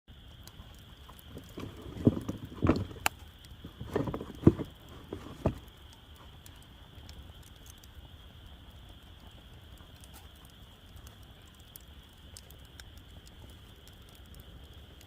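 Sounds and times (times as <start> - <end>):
campfire faint crackling: 0.1 - 15.0
wood knocks and thumps: 1.3 - 5.7.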